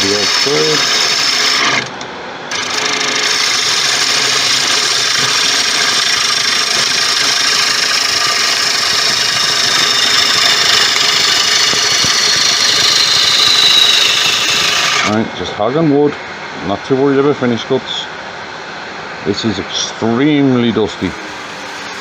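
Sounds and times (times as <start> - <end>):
lathe tool cutting wood: 0.0 - 15.2.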